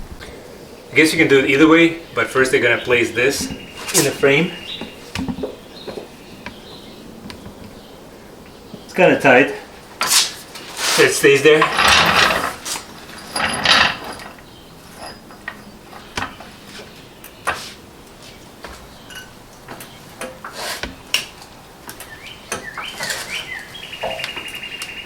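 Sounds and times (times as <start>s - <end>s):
car jack scraping: 2.6s - 5.5s, 10.0s - 17.0s, 22.6s - 24.2s.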